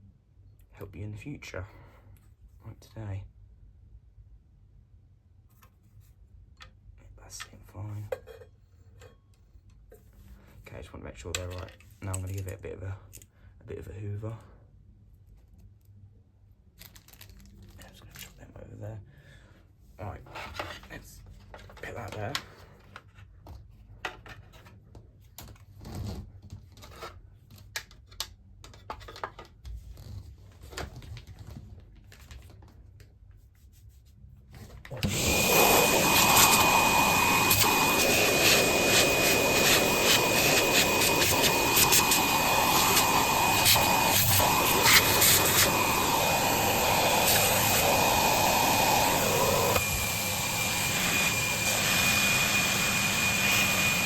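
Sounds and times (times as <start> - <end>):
vacuum cleaner running with whistle: 35.0 - 54.0.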